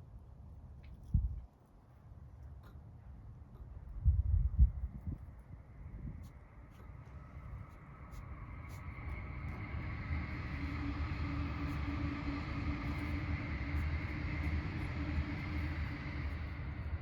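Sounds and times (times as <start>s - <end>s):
engine running: 8.0s - 17.0s.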